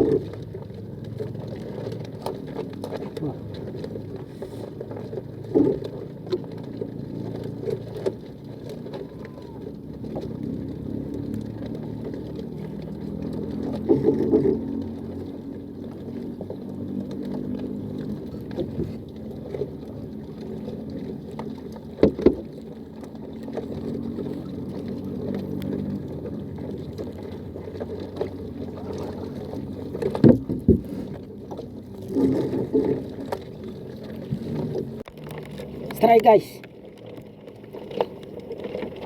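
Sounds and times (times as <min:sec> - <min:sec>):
boat engine running: 0:00.0 - 0:39.0
knocks on boat: 0:22.0 - 0:22.5, 0:30.0 - 0:31.1.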